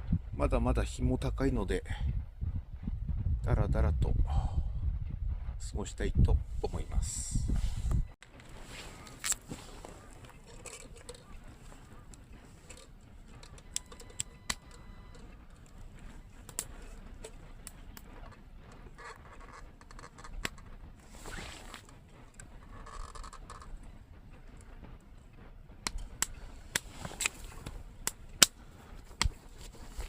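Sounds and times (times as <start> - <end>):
bird calling: 8.8 - 20.5.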